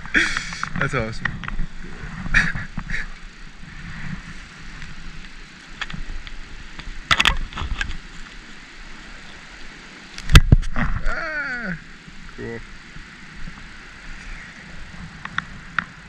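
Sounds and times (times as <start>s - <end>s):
wind buffeting microphone: 0.0s - 8.2s.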